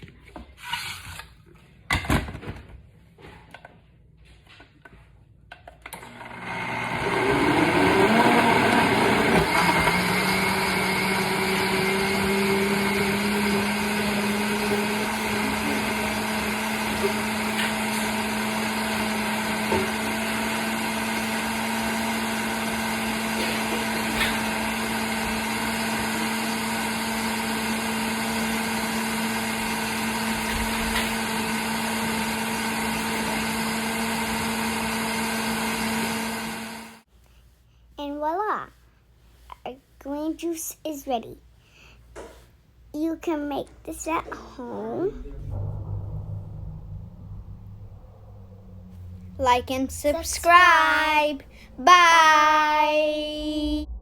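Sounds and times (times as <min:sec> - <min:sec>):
blender whirring: 0:06.0 - 0:37.0.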